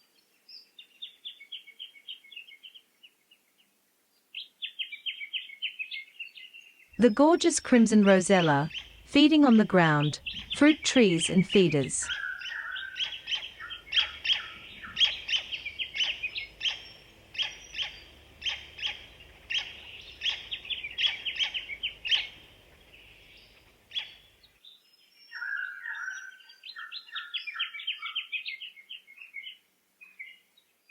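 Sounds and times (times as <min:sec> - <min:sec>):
birds chirping: 0:05.9 - 0:24.6.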